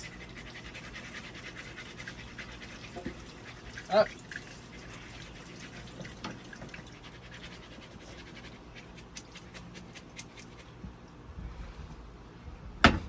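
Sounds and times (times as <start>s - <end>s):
potatoes being rinsed: 0.0s - 10.5s.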